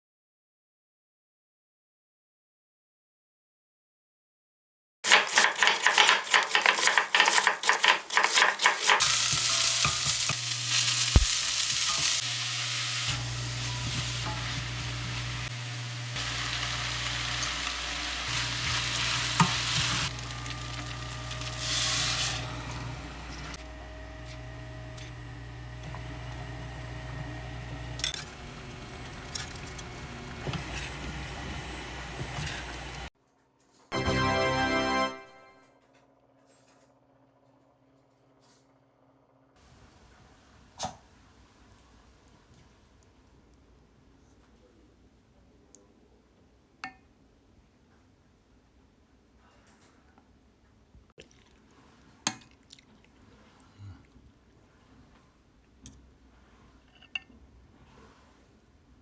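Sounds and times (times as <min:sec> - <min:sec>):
food sizzling in a pan: 0:09.0 - 0:33.1.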